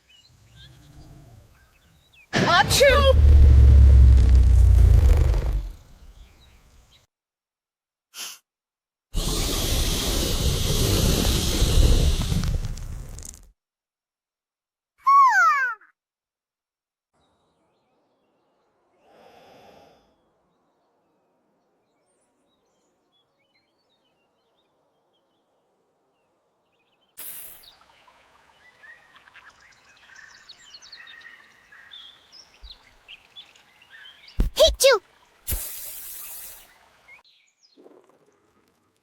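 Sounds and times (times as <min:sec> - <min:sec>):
short pitched sound: 0:02.4 - 0:06.2
sudden loud burst: 0:02.4 - 0:06.2.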